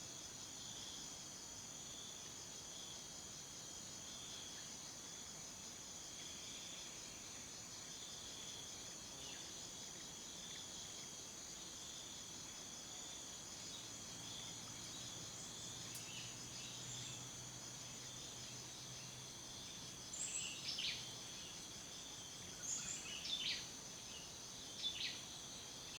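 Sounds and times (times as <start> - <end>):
insects trilling: 6.4 - 26.0.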